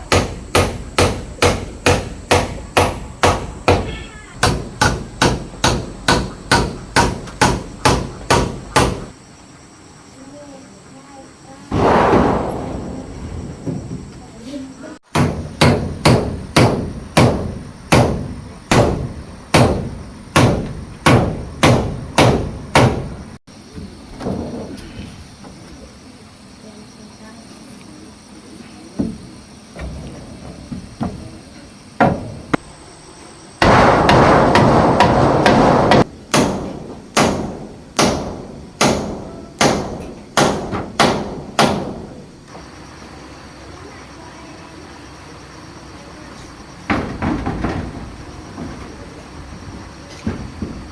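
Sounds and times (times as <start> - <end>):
tool blows striking wood: 0.0 - 9.2, 11.7 - 14.2
loud rough noise: 11.7 - 14.4.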